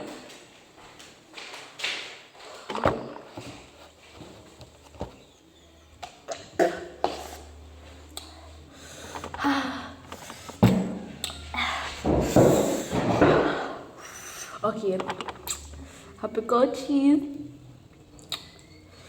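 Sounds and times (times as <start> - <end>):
objects knocking and thunking: 1.4 - 5.3, 9.0 - 14.0, 14.8 - 15.5.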